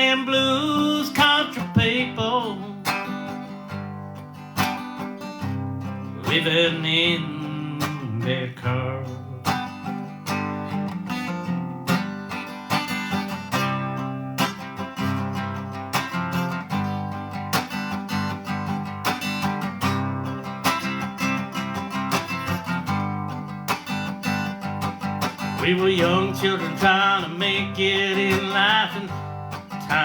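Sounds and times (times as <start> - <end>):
acoustic guitar strumming chords: 0.0 - 30.0.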